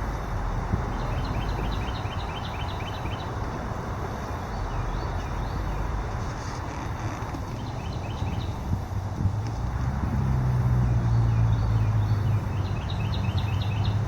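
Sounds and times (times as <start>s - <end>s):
traffic rumble: 0.0s - 14.0s
bird chirping: 0.8s - 3.4s, 4.4s - 8.6s, 10.8s - 14.0s.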